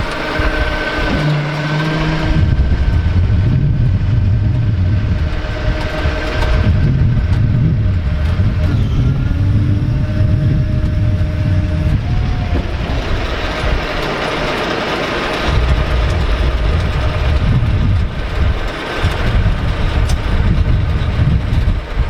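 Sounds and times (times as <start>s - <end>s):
steady whine: 0.0s - 22.0s
vehicle engine rumbling: 0.0s - 22.0s.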